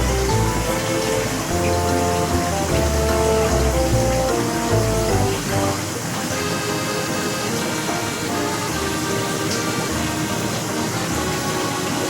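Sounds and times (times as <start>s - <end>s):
background music: 0.0s - 12.0s
rushing water-like noise: 0.0s - 12.0s.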